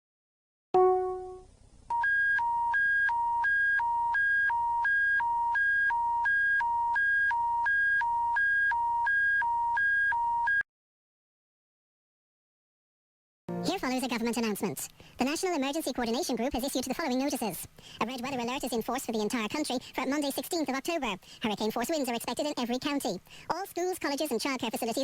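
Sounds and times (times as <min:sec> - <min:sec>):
alert chime: 0:00.8 - 0:01.4
two-tone alarm: 0:00.8 - 0:10.6.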